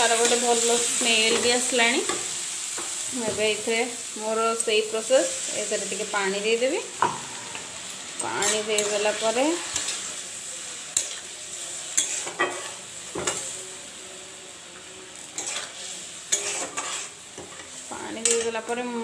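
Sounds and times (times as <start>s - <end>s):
paste sizzling in a pan: 0.0s - 19.0s
spoon stirring and knocking pan: 7.0s - 10.0s, 12.0s - 13.5s, 15.4s - 18.7s.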